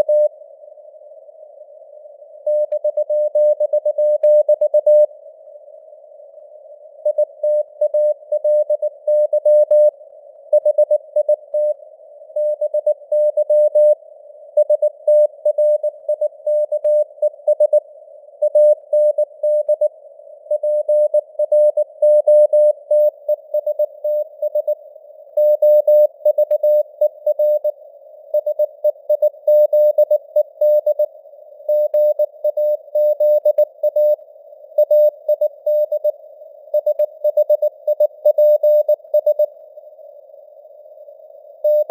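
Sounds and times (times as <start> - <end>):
morse code tone beeping: 36.8 - 39.5.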